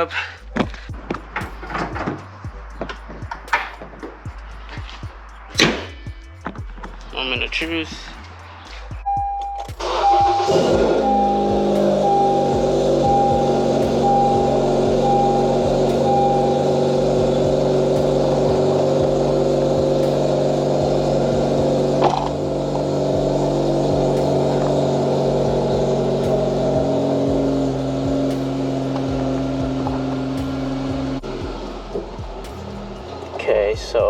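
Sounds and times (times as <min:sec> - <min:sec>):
repeating chime beeps: 0:09.0 - 0:18.5
car engine running: 0:09.7 - 0:34.0.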